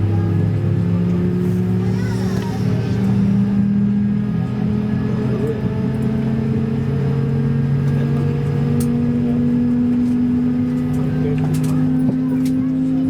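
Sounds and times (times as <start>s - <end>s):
airliner engines droning in cabin: 0.0s - 13.0s.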